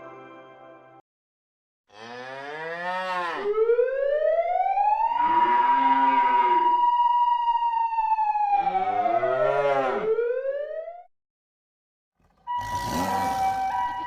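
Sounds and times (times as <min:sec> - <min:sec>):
cow mooing: 0:01.9 - 0:03.5, 0:12.2 - 0:14.0
siren wailing: 0:03.3 - 0:11.1, 0:12.3 - 0:14.0.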